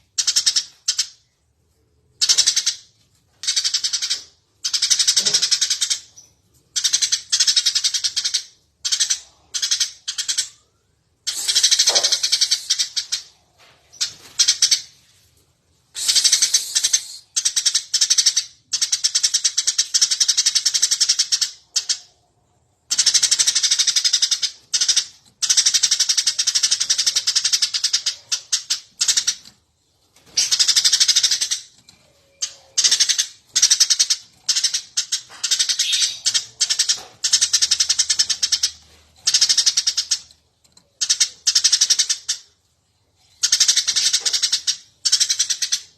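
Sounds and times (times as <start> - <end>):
sparrow chirping: 3.4 - 15.0, 16.0 - 22.2, 22.9 - 29.5, 30.3 - 40.3, 43.4 - 45.9.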